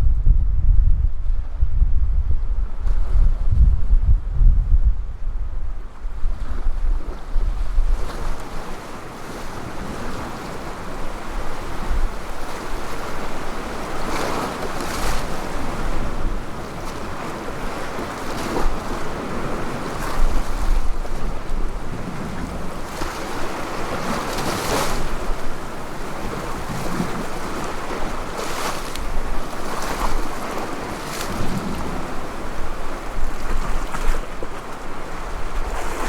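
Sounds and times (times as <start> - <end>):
wind buffeting microphone: 0.0 - 36.0
sea waves splashing: 8.4 - 36.0.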